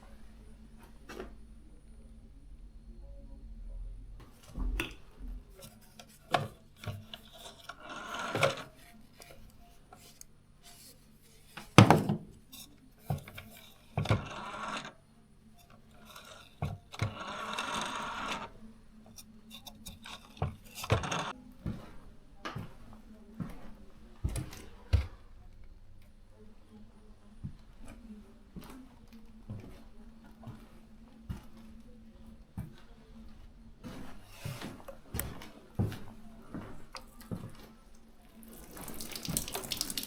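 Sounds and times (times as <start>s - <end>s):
wood scraping on wood: 5.5s - 11.8s.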